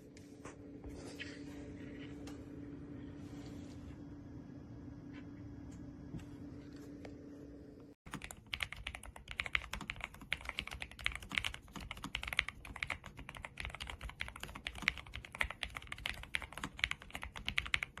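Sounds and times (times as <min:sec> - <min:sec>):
fast keyboard typing: 0:08.1 - 0:18.0.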